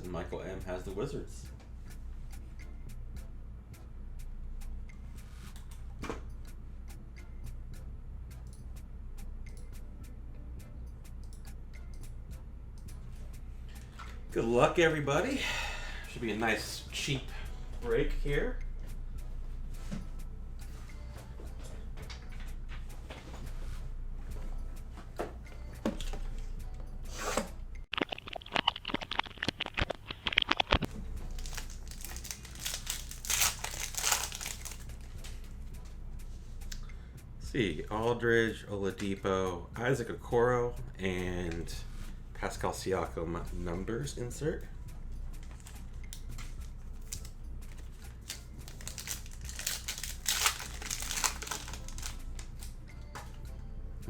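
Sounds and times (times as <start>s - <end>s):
wrapper crinkling: 28.0s - 35.4s, 46.4s - 52.7s
packaging tearing: 28.4s - 35.0s, 47.0s - 52.7s.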